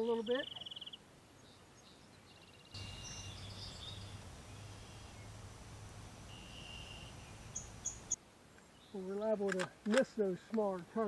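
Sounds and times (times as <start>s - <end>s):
birds chirping: 0.2s - 9.0s
steady low rumble: 2.8s - 8.2s.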